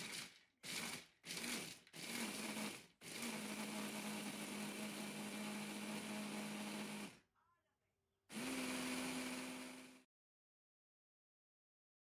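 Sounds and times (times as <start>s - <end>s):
kitchen appliance motor humming: 0.8s - 7.2s, 8.3s - 10.0s.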